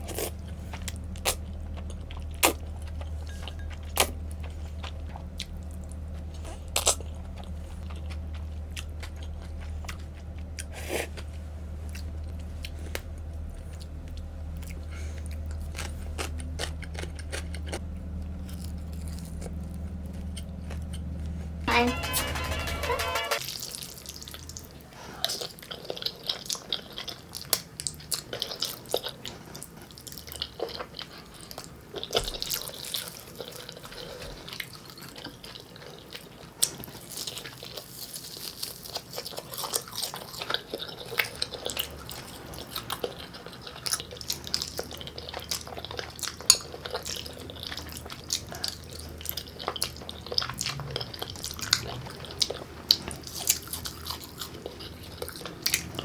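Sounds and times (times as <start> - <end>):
wet sticky chewing: 34.6 - 56.0.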